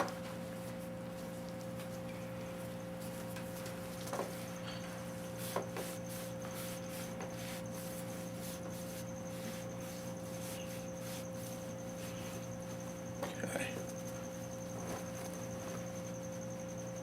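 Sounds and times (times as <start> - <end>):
electrical hum: 0.0 - 17.0
scratchy rubbing of wiping: 5.2 - 12.8.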